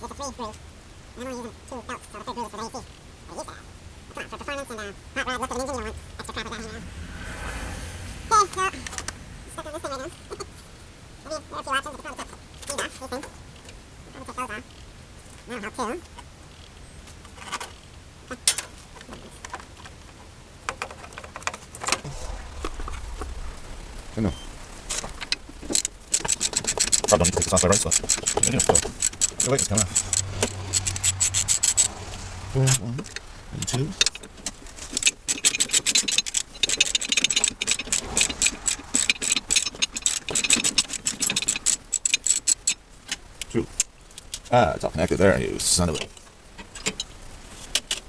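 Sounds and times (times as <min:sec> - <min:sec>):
hand tools clicking and knocking: 0:25.2 - 0:31.9, 0:33.0 - 0:44.4.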